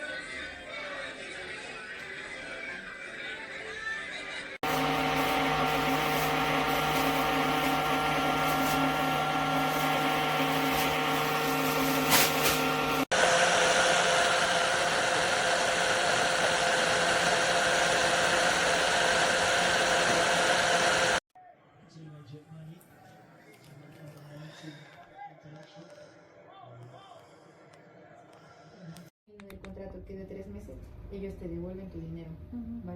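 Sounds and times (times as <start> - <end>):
blender motor whining: 4.6 - 21.2.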